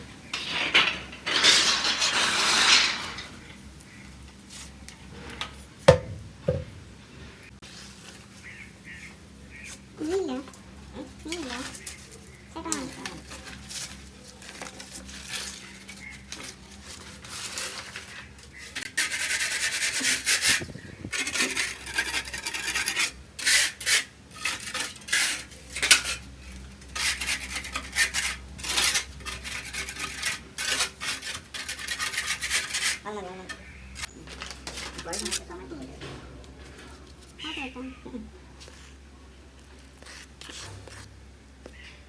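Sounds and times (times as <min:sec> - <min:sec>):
metallic clatter: 0:00.3 - 0:03.4
rasping scraping strokes: 0:00.3 - 0:03.5, 0:13.2 - 0:34.1, 0:39.6 - 0:41.2.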